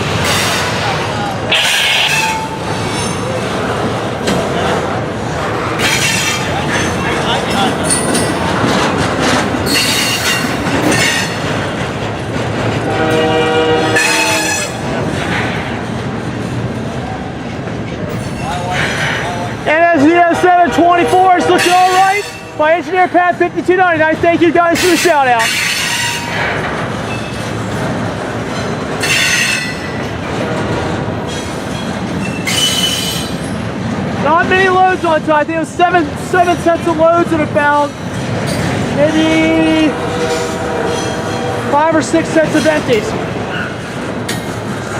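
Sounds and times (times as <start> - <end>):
freight train rumble and clatter: 0.0 - 44.9
train wheels squealing: 1.5 - 3.4, 5.8 - 8.5, 9.6 - 11.5, 24.9 - 27.5, 29.0 - 30.0, 31.3 - 33.6, 43.5 - 43.9
locomotive air horn: 12.8 - 14.8, 20.2 - 22.6, 39.8 - 41.9.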